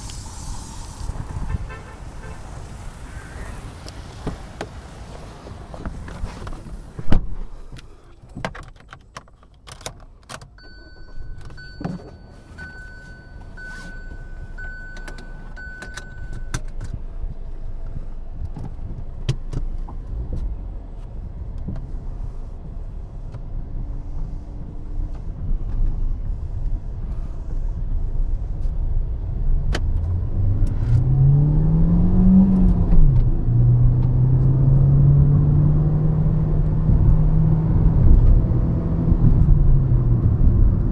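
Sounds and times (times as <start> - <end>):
warning chime beeping: 10.6 - 16.4
car engine accelerating: 27.6 - 40.9.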